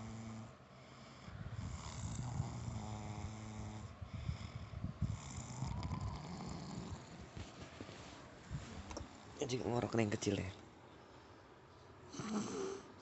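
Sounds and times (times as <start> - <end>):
person snoring: 0.0 - 7.2, 12.1 - 13.0.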